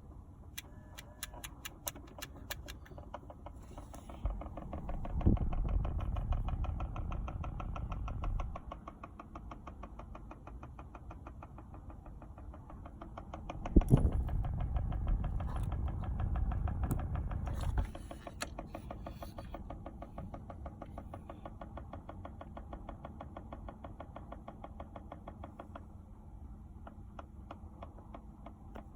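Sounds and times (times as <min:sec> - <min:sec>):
rapid ticking behind dashboard: 0:00.6 - 0:26.0
low rumble: 0:03.6 - 0:09.0, 0:13.3 - 0:18.4.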